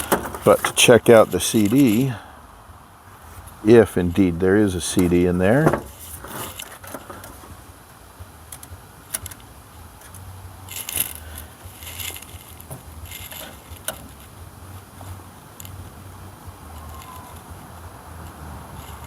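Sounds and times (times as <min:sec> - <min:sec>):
faint steady hum: 0:00.0 - 0:19.0
small tools clinking: 0:10.7 - 0:14.3.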